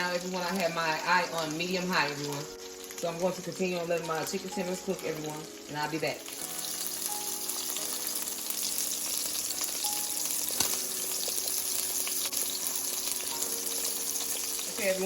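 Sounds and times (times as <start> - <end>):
food sizzling in hot oil: 0.0 - 15.0.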